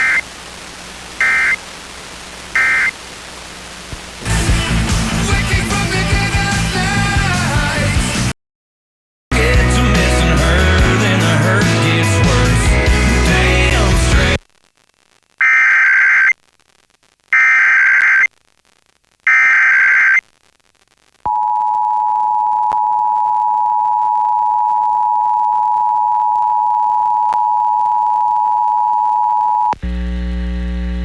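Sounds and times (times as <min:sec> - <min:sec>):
warbling data tone bursts: 0:00.0 - 0:00.2, 0:01.2 - 0:01.6, 0:02.5 - 0:03.0, 0:15.4 - 0:16.4, 0:17.4 - 0:18.3, 0:19.3 - 0:20.2.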